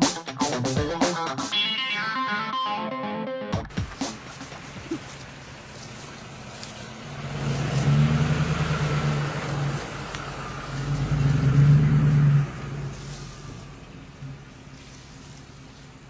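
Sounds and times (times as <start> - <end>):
vehicle engine running: 3.6 - 16.0.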